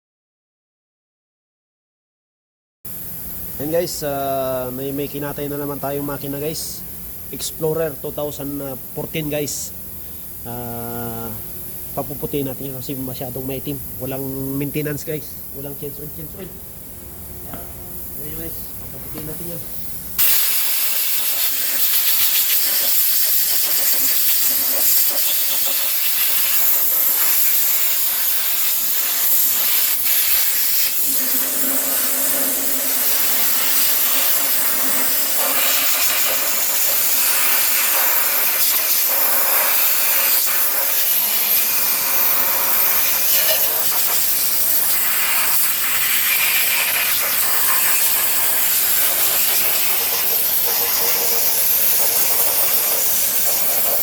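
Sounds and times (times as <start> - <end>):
high-pressure spray hissing: 18.0 - 54.0.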